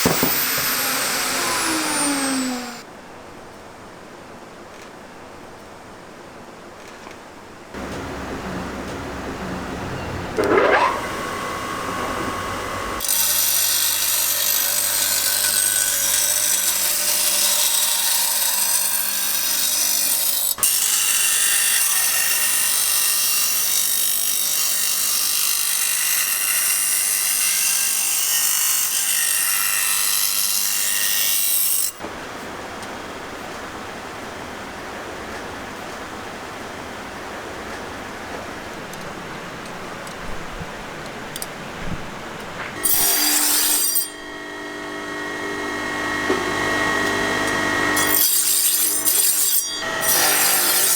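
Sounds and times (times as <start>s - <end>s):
tool rasping: 0.0s - 2.8s, 10.4s - 32.0s.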